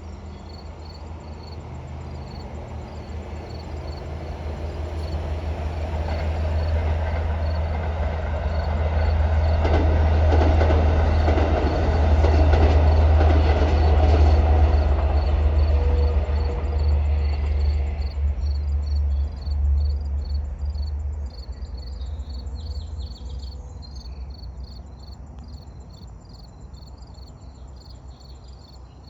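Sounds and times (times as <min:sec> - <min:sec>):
diesel train engine drone: 0:00.0 - 0:29.0
train wheels clacking over rail joints: 0:02.2 - 0:18.3.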